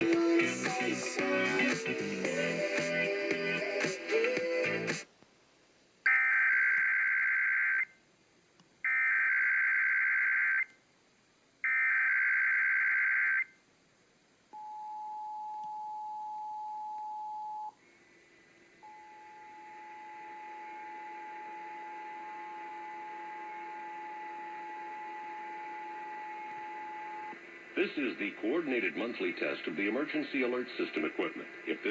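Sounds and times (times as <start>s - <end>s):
steady attention tone: 18.8s - 29.1s.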